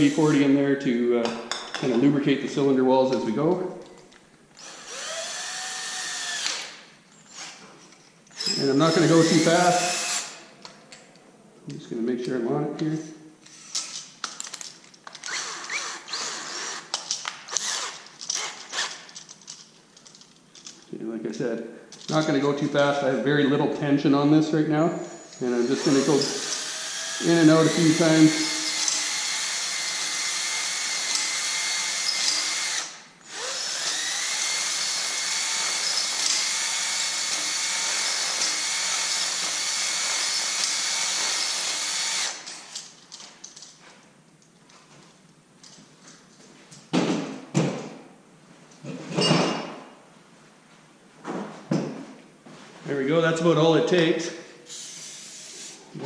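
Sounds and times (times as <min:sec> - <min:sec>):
electric drill spinning hone: 0:04.6 - 0:07.6, 0:08.3 - 0:10.4, 0:15.2 - 0:19.0, 0:25.3 - 0:42.8, 0:54.7 - 0:55.8.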